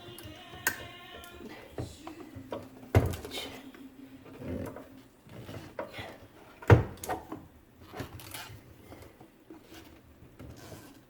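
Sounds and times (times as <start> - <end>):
clicks and scrapes of handling: 7.8 - 11.0.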